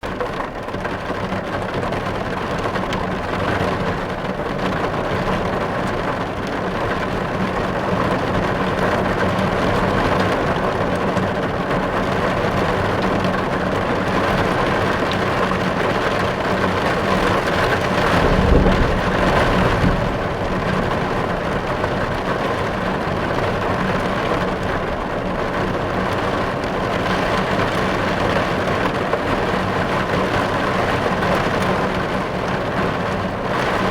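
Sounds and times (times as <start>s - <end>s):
heavy rain on car glass: 0.0s - 33.9s
low rumble: 17.8s - 23.2s.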